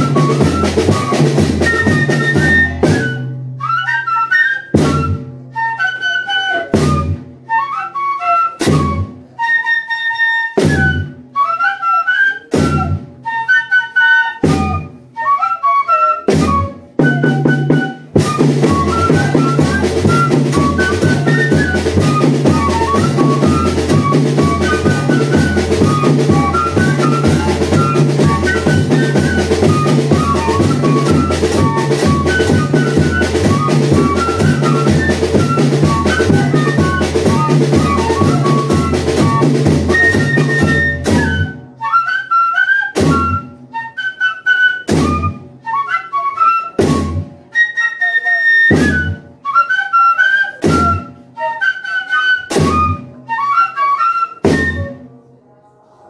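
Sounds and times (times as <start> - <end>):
cane fifes playing melody: 0.0 - 3.0, 13.5 - 41.2
percussion driving beat: 0.0 - 3.0, 16.3 - 41.2.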